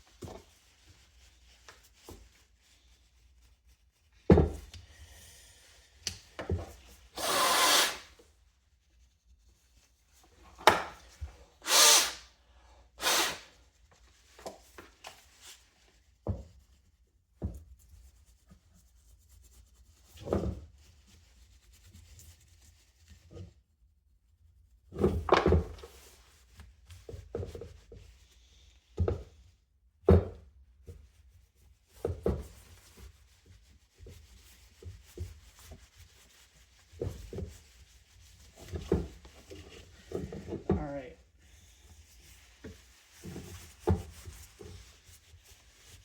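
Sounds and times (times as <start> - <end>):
scrubbing and wiping strokes: 0.1 - 4.3, 13.2 - 23.7, 26.0 - 29.5, 31.0 - 46.0.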